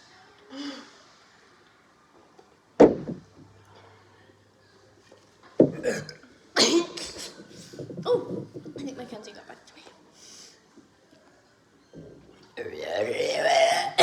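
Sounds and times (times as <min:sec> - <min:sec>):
person burping: 0:05.7 - 0:06.8, 0:12.6 - 0:14.0.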